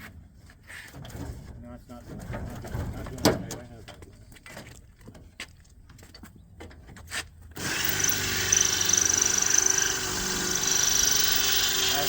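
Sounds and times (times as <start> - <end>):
power drill whining: 7.6 - 12.0.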